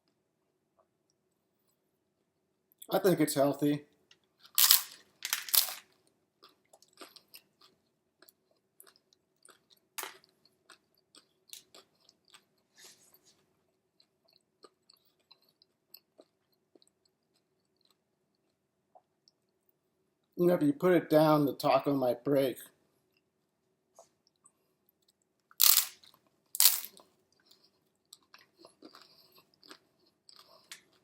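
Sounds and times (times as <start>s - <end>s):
person chewing crunchy taco: 4.2s - 19.6s, 24.0s - 31.0s.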